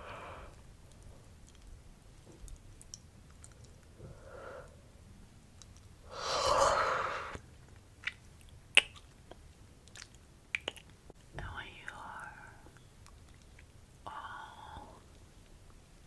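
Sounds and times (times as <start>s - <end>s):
soft breath: 0.0s - 0.6s, 4.0s - 5.0s, 6.1s - 7.4s
mouth clicks: 10.0s - 10.9s.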